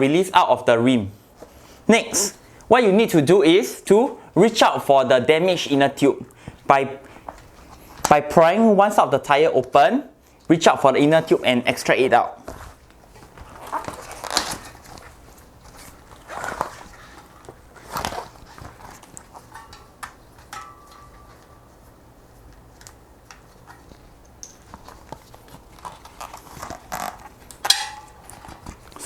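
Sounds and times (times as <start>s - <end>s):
rubber scraping: 12.4s - 19.7s, 24.7s - 27.5s.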